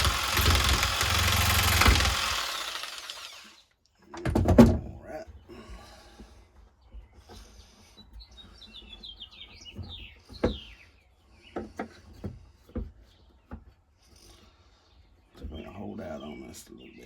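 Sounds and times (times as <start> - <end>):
songbird chirping: 5.0 - 12.1, 12.8 - 17.0.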